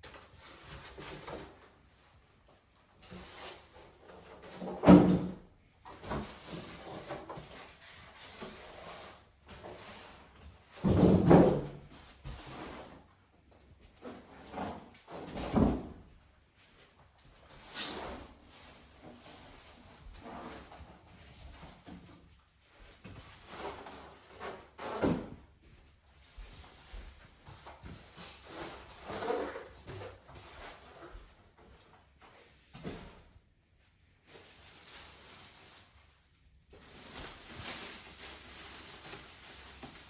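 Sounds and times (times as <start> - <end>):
rustling: 36.7 - 40.0.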